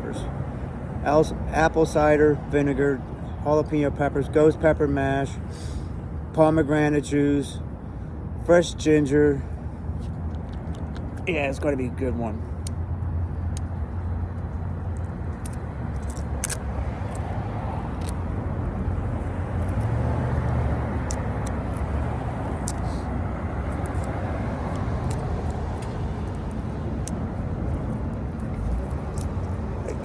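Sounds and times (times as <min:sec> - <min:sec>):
vehicle engine rumbling: 0:07.4 - 0:30.0.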